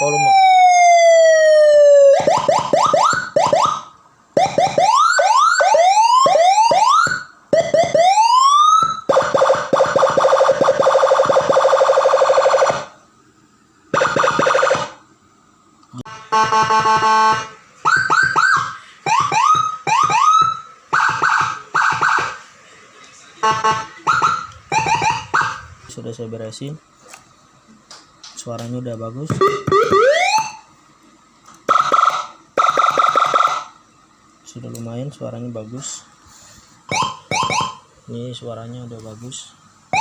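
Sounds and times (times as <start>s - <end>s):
electronic siren whoops and warbles: 0.0s - 12.9s, 13.9s - 15.0s, 16.0s - 22.4s, 23.4s - 25.6s, 29.4s - 30.7s, 31.7s - 33.7s, 36.9s - 37.8s
siren stepped multi-tone pattern: 0.0s - 13.0s, 13.9s - 15.0s, 16.0s - 22.6s, 23.4s - 25.8s, 29.3s - 30.8s, 31.6s - 33.8s, 36.9s - 37.9s
short rising siren chirps: 23.4s - 25.7s.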